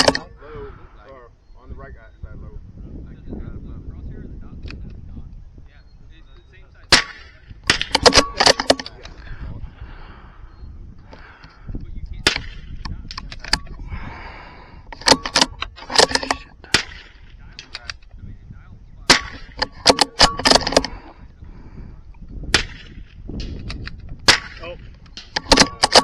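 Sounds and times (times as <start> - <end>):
gunshots: 6.9 - 9.0, 15.0 - 17.7, 19.1 - 20.9, 22.5 - 23.6, 24.2 - 26.0.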